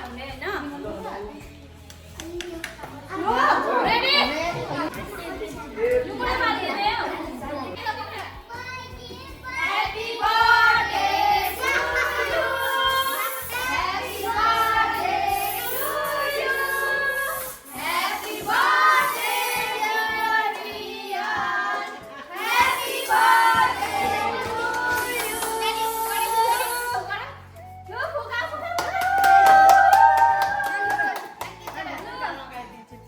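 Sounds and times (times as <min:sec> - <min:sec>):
music: 0:00.0 - 0:33.0
people singing a birthday song: 0:02.8 - 0:27.6.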